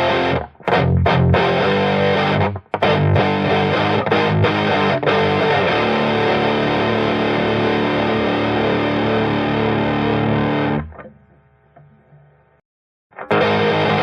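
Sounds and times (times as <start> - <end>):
electric guitar chords: 0.0 - 11.4, 13.1 - 14.0.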